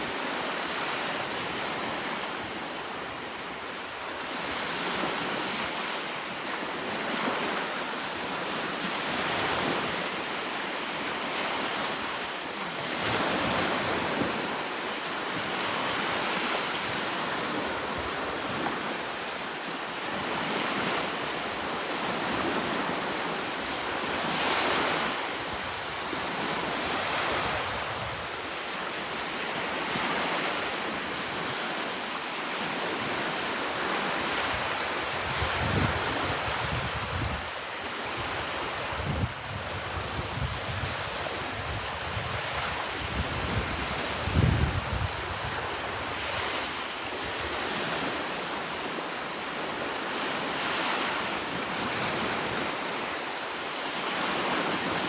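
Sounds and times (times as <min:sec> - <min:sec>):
wind noise: 0:34.3 - 0:47.5.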